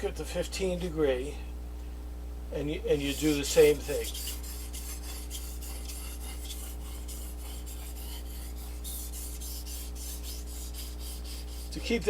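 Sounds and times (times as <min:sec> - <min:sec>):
knife on sharpening stone: 0:03.2 - 0:11.7.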